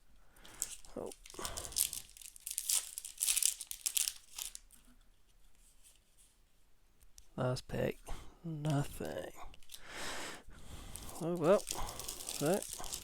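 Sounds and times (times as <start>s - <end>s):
foil wrapper tearing and crinkling: 0.5s - 4.8s, 10.9s - 13.0s.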